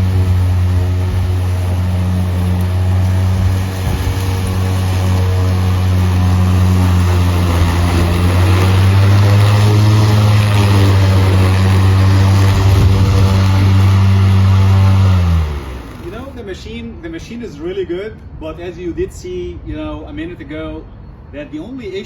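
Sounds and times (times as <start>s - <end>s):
lawn mower running: 0.0s - 16.6s
rush of cut grass: 0.0s - 16.6s.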